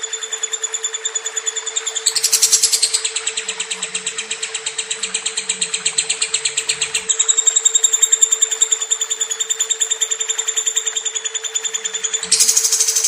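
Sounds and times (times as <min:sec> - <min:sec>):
lovebird chattering trill: 0:01.8 - 0:09.2, 0:11.6 - 0:13.0.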